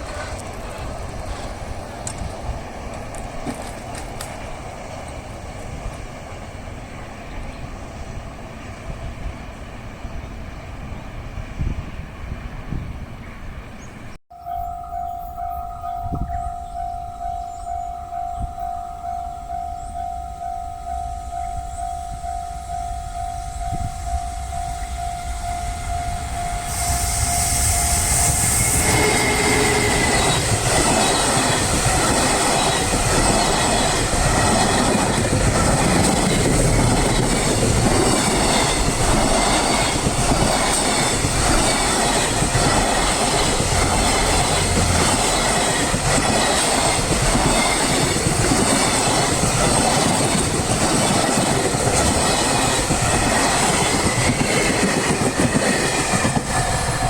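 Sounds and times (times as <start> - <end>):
train wheels clacking on rails: 0.0 - 6.4, 23.7 - 57.0
level crossing warning: 14.3 - 28.0.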